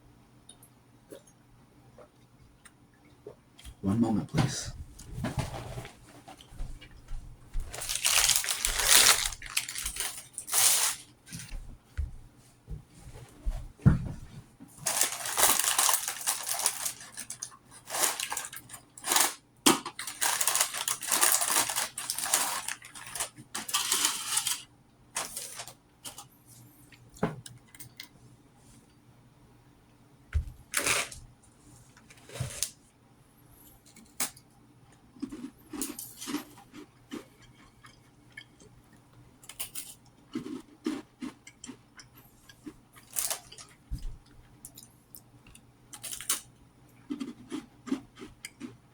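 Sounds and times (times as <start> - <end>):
crackers crackling while eaten: 7.7 - 11.2, 14.8 - 28.0, 33.7 - 48.9.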